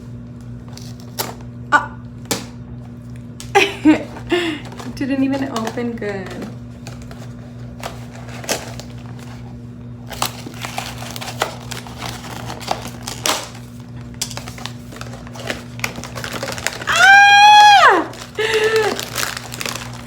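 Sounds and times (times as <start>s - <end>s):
crinkling plastic wrapping: 3.6s - 20.0s
packaging being torn open: 6.8s - 20.0s.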